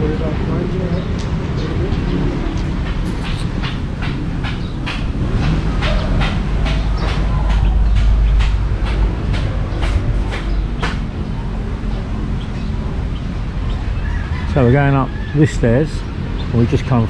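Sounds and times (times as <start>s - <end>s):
wind buffeting microphone: 0.2s - 17.0s
footsteps walking briskly: 3.0s - 10.6s.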